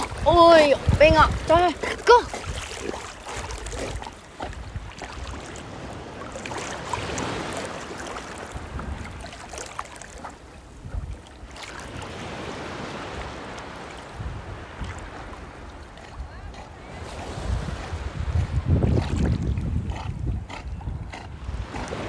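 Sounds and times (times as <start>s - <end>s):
dog splashing while swimming: 0.0s - 13.8s.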